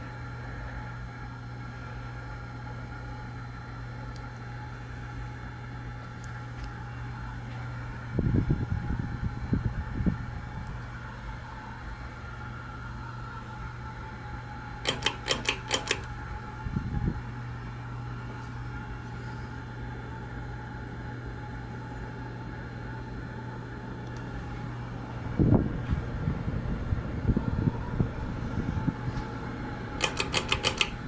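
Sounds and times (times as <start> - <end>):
ceiling fan motor hum: 0.0 - 31.0
sharp clicks: 14.8 - 16.1, 30.0 - 31.0.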